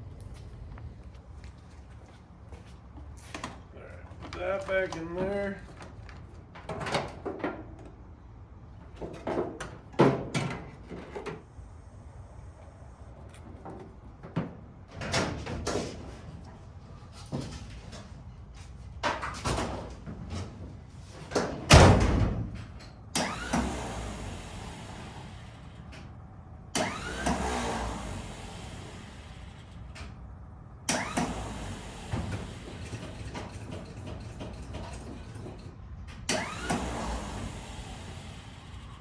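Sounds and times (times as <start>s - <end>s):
handling clunks and rattles: 0.4s - 8.1s, 8.7s - 11.5s, 13.3s - 23.7s, 30.9s - 36.9s.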